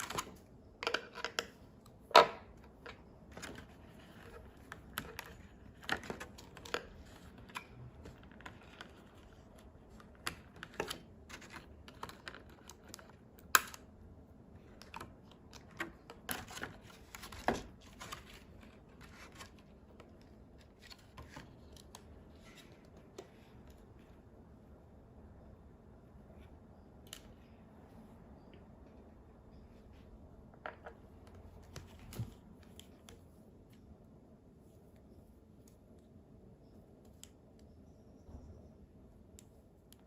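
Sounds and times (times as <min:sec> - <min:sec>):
packaging clicks and rustles: 0:02.7 - 0:13.8.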